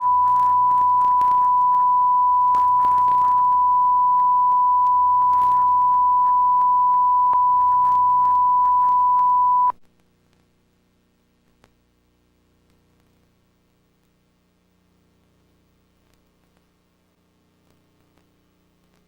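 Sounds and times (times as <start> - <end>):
steady single-pitched test tone: 0.0 - 9.8
faint crackles: 0.0 - 19.0.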